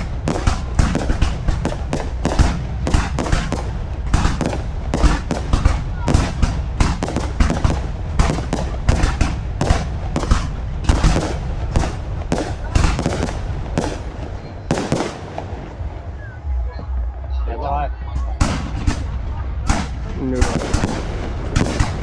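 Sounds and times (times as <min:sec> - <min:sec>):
fireworks bangs and crackles: 0:00.0 - 0:16.5, 0:18.2 - 0:22.0
constant low rumble: 0:00.0 - 0:22.0.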